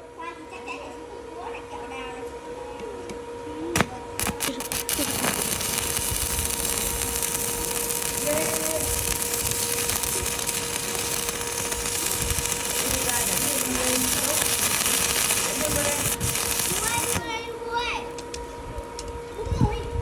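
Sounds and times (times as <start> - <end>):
constant hum: 0.0 - 20.0
welding arc cracks and hiss: 3.8 - 19.2.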